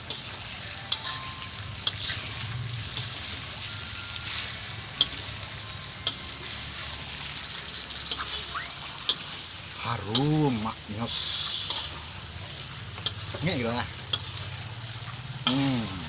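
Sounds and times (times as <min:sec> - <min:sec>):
beef sizzling in hot oil: 0:00.0 - 0:16.0
utensil clicking against pan: 0:01.8 - 0:02.1, 0:06.0 - 0:06.2, 0:09.0 - 0:09.4, 0:10.1 - 0:10.4, 0:12.9 - 0:14.5.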